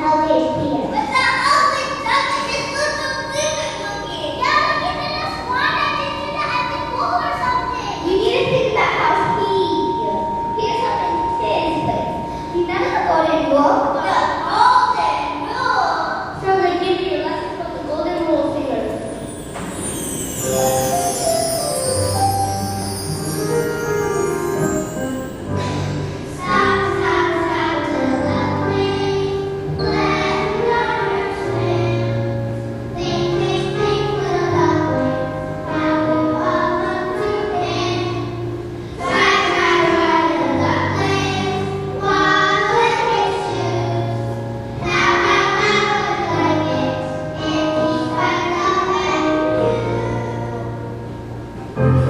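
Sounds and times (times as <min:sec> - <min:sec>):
child singing: 0:00.0 - 0:15.8, 0:26.4 - 0:32.2, 0:33.0 - 0:38.4, 0:39.0 - 0:50.8
instrumental accompaniment: 0:08.0 - 0:13.6, 0:18.7 - 0:52.0.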